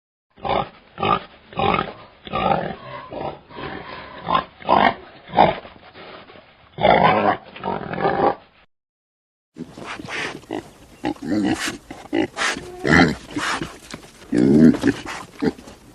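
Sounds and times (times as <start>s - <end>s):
pig grunting: 0.4s - 5.7s, 9.6s - 15.8s.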